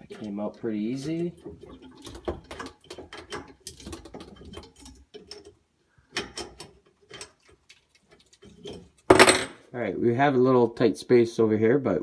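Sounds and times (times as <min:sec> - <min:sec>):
metallic clicks of plumbing fittings: 0:01.0 - 0:09.1.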